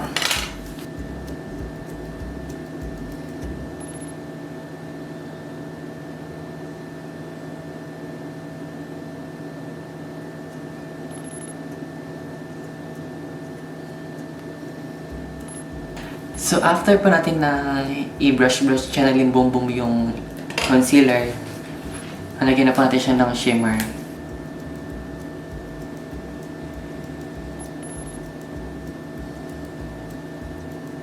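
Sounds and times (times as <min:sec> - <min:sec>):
faint low bumps: 0:00.0 - 0:04.2, 0:15.1 - 0:30.9
steady appliance hum: 0:00.0 - 0:31.0.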